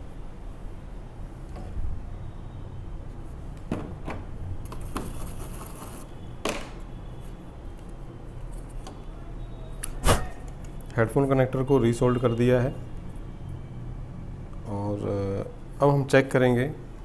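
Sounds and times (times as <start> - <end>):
low electrical hum: 0.0 - 17.0
short high hiss: 10.0 - 10.4.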